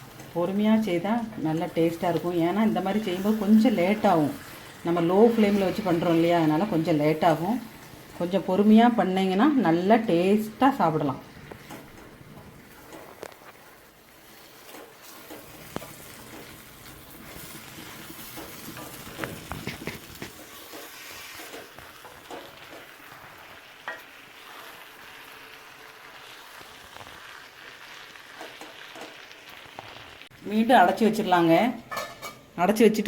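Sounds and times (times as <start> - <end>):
chicken sizzling in oil: 0.0 - 30.6
spoon scraping a pan: 2.6 - 8.2, 12.7 - 23.2, 31.9 - 32.5.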